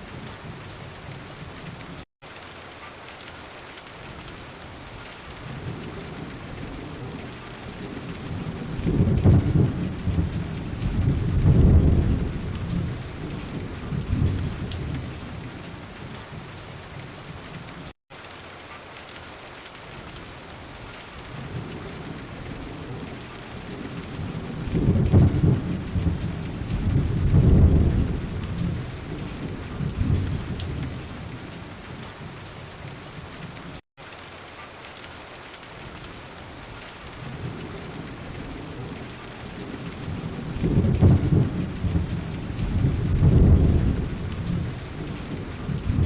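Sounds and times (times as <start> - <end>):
heavy rain on car windows: 0.0 - 46.0
low rumble of thunder: 4.0 - 17.7, 20.0 - 33.7, 37.1 - 46.0.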